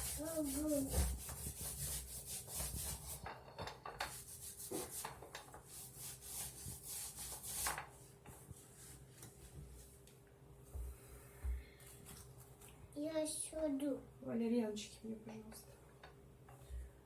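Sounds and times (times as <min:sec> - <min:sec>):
paintbrush brushing on wall: 0:00.0 - 0:03.4, 0:04.0 - 0:09.9.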